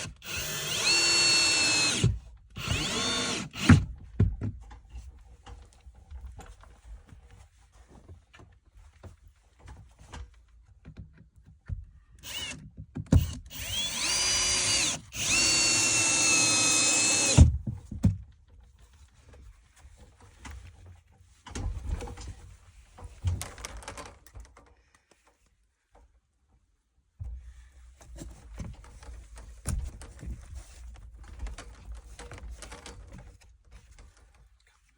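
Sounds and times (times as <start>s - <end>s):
power drill driving screws: 0.0s - 3.9s, 12.2s - 12.6s, 13.2s - 17.5s.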